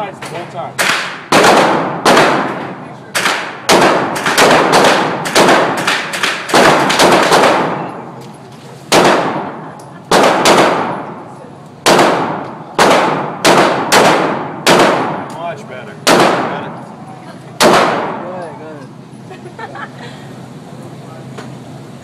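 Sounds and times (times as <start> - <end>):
pistol shots echoing: 0.8 - 8.0, 8.9 - 11.2, 11.8 - 15.3, 16.0 - 16.8, 17.6 - 18.2.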